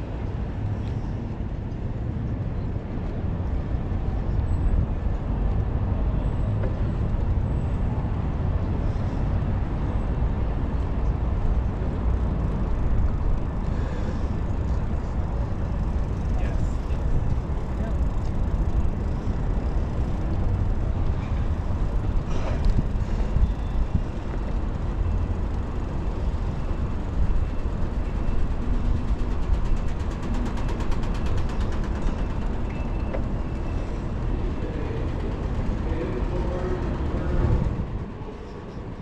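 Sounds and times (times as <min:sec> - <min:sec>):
city traffic: 0:00.0 - 0:39.0
wind buffeting microphone: 0:06.8 - 0:39.0
rapid high ticks: 0:27.8 - 0:33.2.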